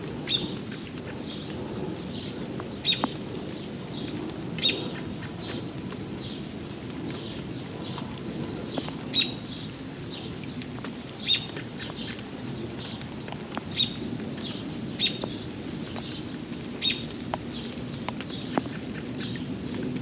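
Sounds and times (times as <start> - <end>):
rain pattering: 0.0 - 20.0
water dripping: 0.0 - 20.0
bird chirping: 13.7 - 15.4, 16.8 - 17.1.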